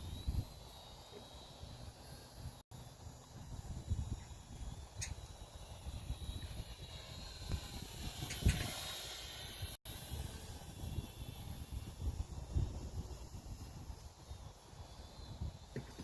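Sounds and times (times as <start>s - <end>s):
wind buffeting microphone: 3.3s - 16.0s.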